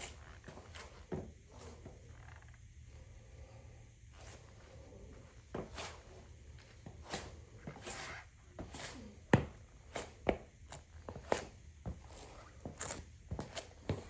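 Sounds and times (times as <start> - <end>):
footsteps on hard floor: 5.5 - 6.0, 6.6 - 14.0.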